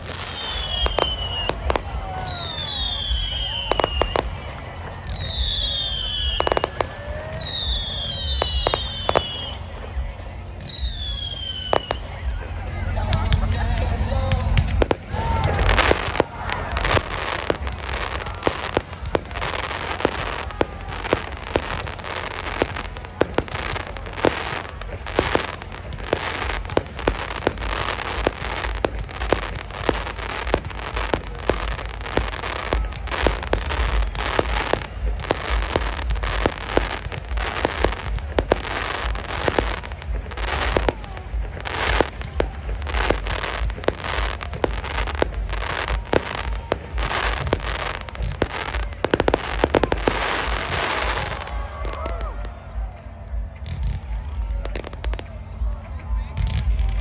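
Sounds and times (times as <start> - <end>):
fireworks bangs and pops: 0.0 - 57.0
steady low rumble: 11.9 - 50.9.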